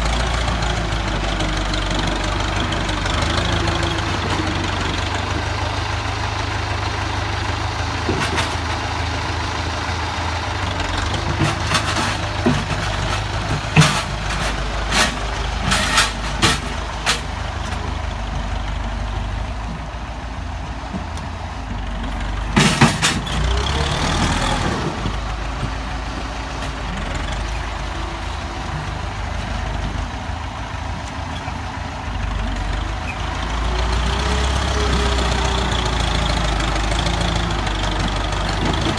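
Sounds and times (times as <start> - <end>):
diesel tractor engine running: 0.0 - 38.9.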